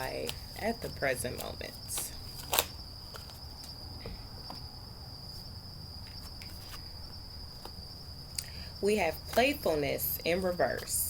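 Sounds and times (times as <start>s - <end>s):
cricket trilling: 0.0s - 11.0s.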